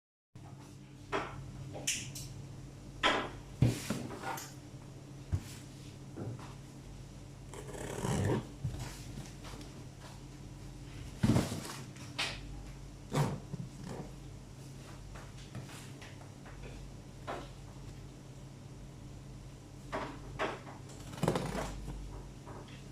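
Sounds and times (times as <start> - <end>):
steady low hum: 0.4 - 22.9
packaging knocks and scrapes: 11.2 - 11.9.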